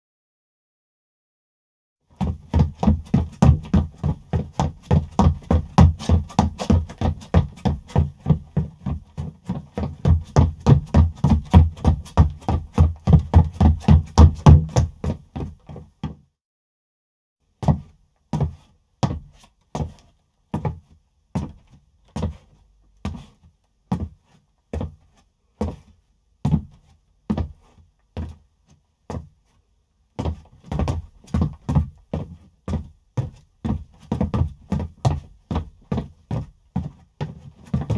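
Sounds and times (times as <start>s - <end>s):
footsteps running on hard surface: 2.2s - 15.6s.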